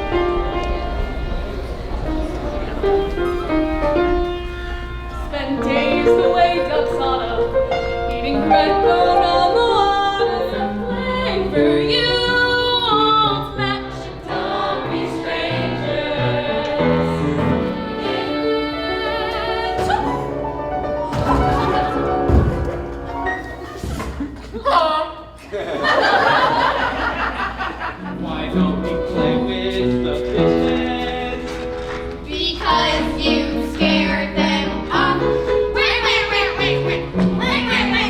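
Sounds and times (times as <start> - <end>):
young performers singing: 0.0 - 22.5, 28.1 - 38.0
instrumental accompaniment: 0.0 - 23.8.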